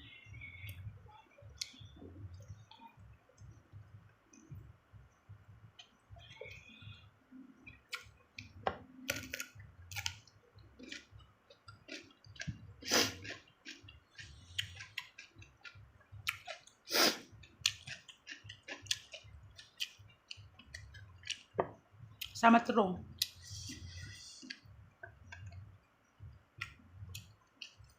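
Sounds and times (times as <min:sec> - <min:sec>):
person chewing crunchy food: 0:07.8 - 0:21.5.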